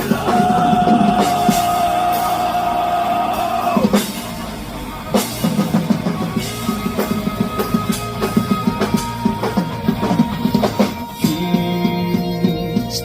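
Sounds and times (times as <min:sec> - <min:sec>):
drum kit beat: 0:00.0 - 0:13.0
guitar: 0:00.0 - 0:13.0
rock band playing: 0:00.0 - 0:13.0.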